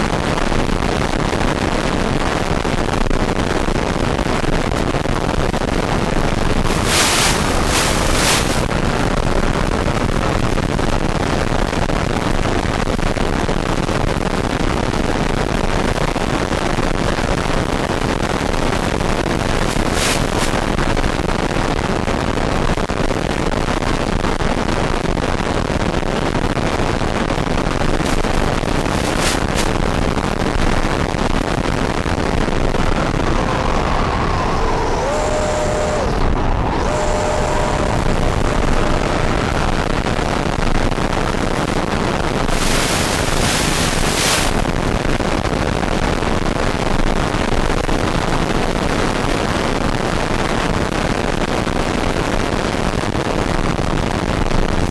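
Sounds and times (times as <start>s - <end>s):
faint whine: 2.8s - 11.3s, 17.6s - 21.6s, 27.1s - 45.7s
jet engine roar: 6.2s - 9.1s, 33.0s - 40.5s, 41.5s - 44.7s
air rushing past: 6.4s - 8.9s, 28.0s - 29.9s, 41.5s - 44.6s
hiss surges: 6.6s - 8.8s, 28.0s - 29.8s, 41.6s - 44.6s.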